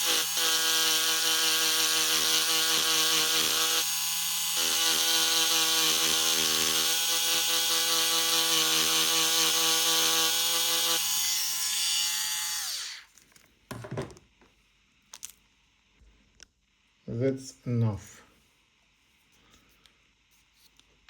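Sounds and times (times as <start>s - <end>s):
electric rotary tool running: 0.0s - 13.1s
knock: 13.7s - 14.2s.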